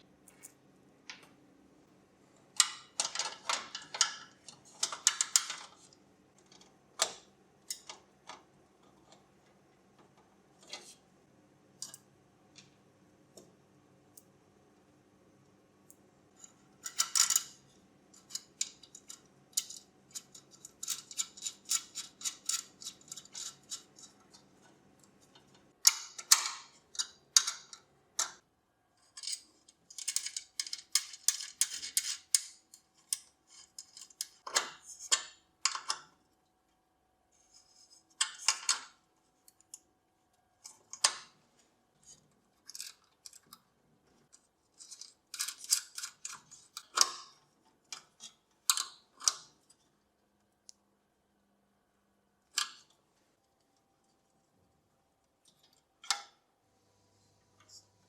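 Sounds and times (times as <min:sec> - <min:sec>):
faint steady hum: 0:00.0 - 0:58.0
small hard parts clicking and rattling: 0:16.4 - 0:28.4, 0:29.0 - 0:36.0, 0:42.0 - 0:43.6, 0:44.2 - 0:49.7.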